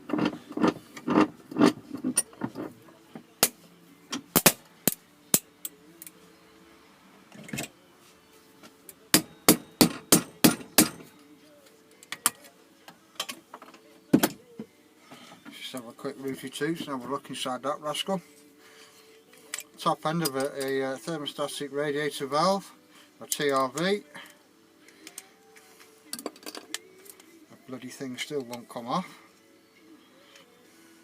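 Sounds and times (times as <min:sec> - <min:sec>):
tools and metal parts clicking: 0:00.1 - 0:02.7, 0:19.3 - 0:20.8, 0:26.1 - 0:27.2.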